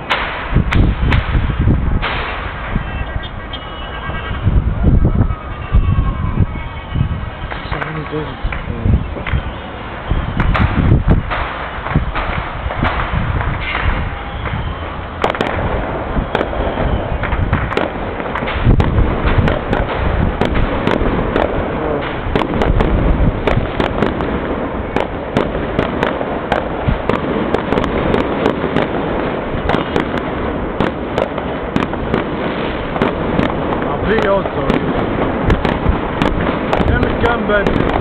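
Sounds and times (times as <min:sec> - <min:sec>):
fireworks bangs and crackling: 0:00.0 - 0:38.0
rumble of distant explosions: 0:00.0 - 0:38.0.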